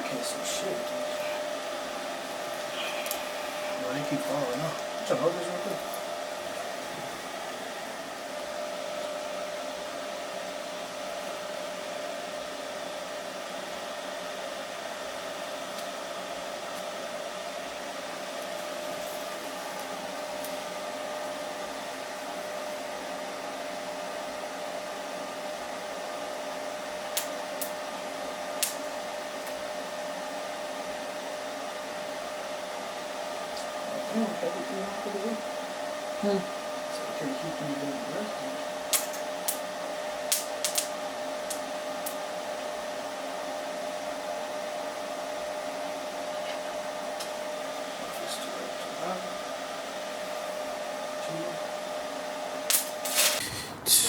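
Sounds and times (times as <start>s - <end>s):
machine motor humming: 0.0s - 25.9s.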